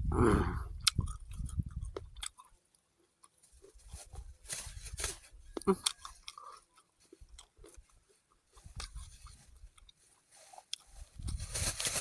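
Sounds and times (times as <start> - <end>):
person chewing fruit: 0.4 - 3.9, 5.4 - 10.9
loud rustling: 11.3 - 12.0.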